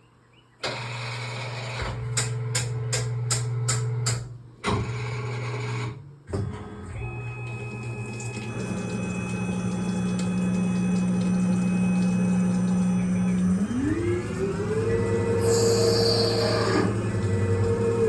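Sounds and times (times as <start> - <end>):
lathe spindle whine: 7.1 - 18.0
low hum: 8.6 - 18.0.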